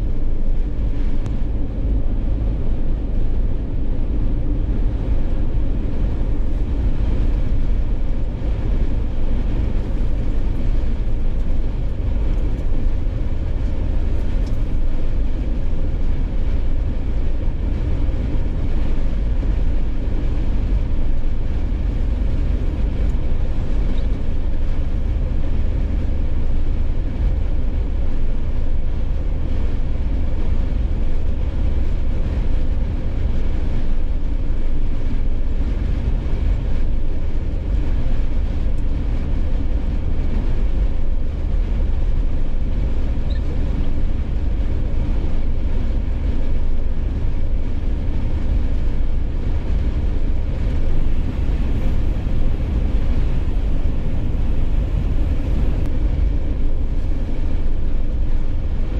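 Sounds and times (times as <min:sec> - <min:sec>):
road and wind noise: 0:00.0 - 0:58.9
car engine: 0:50.6 - 0:55.9.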